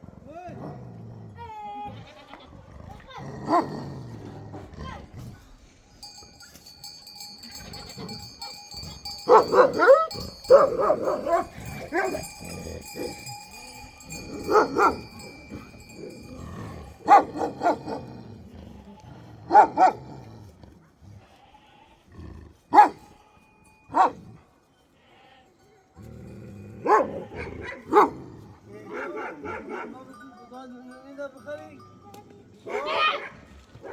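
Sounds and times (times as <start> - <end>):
dog barking: 3.5 - 3.8, 8.0 - 13.3, 14.1 - 16.1, 16.8 - 18.1, 19.4 - 20.2, 22.7 - 23.1, 23.9 - 24.3, 26.8 - 28.3, 28.9 - 30.1, 32.6 - 33.9.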